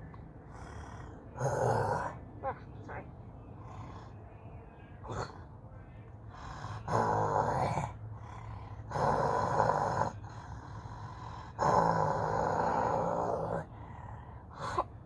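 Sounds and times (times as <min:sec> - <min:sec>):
person imitating wolf growl: 0:06.9 - 0:08.0, 0:08.9 - 0:10.2, 0:11.6 - 0:13.7.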